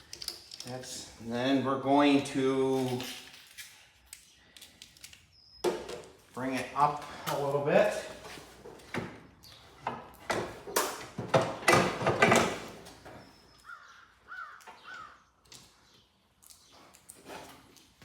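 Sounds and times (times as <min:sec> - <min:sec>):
tools knocking on metal parts: 0:10.3 - 0:12.7.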